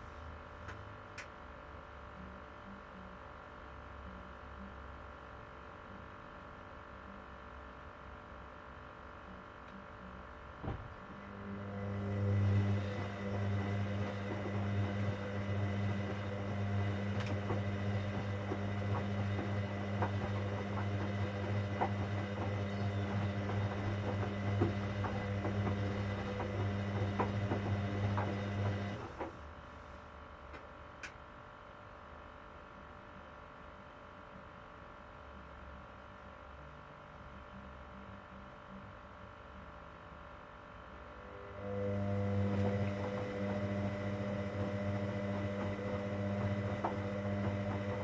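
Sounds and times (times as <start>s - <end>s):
washing machine humming: 10.5s - 30.7s, 41.1s - 48.0s.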